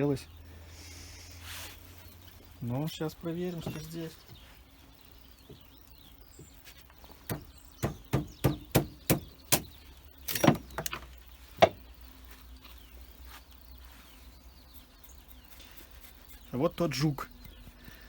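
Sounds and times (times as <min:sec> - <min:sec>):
knocks on firewood log: 0:07.3 - 0:09.7, 0:11.6 - 0:11.8.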